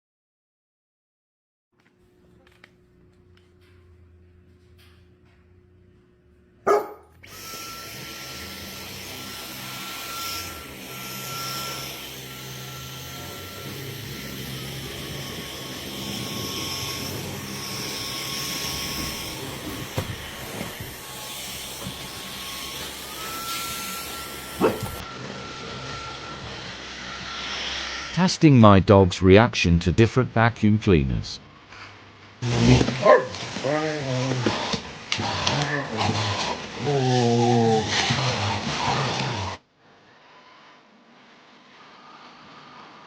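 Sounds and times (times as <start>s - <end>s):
vacuum cleaner motor whine: 6.7s - 28.2s, 32.5s - 43.0s.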